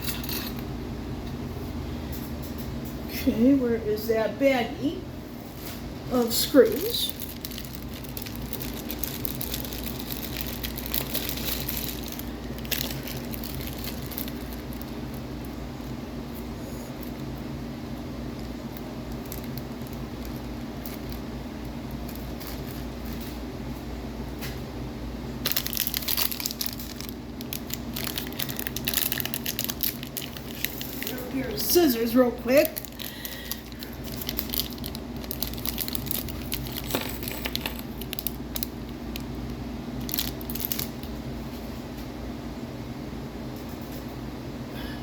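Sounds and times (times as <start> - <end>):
steady low hum: 0.0 - 45.0
plastic bag crinkling: 6.1 - 16.0, 18.3 - 23.5, 25.4 - 39.4, 40.0 - 41.2
plastic baggie rustling: 6.5 - 15.3, 19.1 - 21.3, 22.0 - 23.4, 25.4 - 39.2, 40.0 - 41.1.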